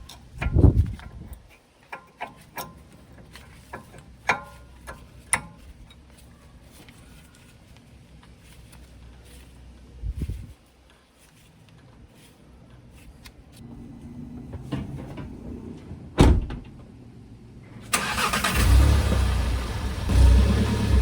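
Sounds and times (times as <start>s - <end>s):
car engine starting and running: 13.6s - 17.0s, 17.7s - 21.0s.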